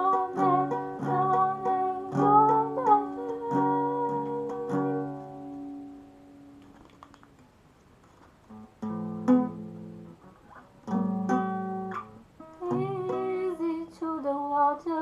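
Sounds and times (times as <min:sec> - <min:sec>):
acoustic guitar strummed chords: 0:00.0 - 0:06.6, 0:08.6 - 0:13.9.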